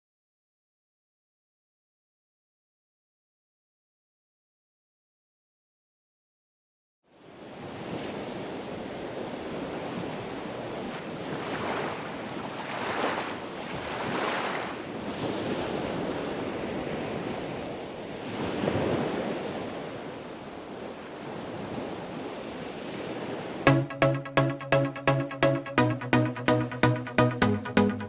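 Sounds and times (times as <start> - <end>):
ocean waves breaking: 7.5 - 16.2.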